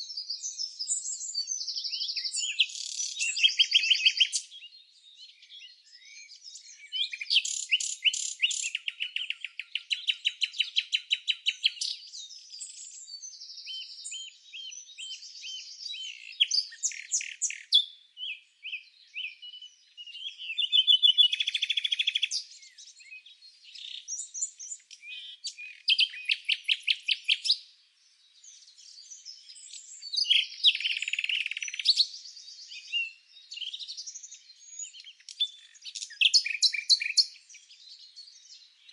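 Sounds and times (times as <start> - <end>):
songbirds chirping and trilling: 0.0 - 38.9.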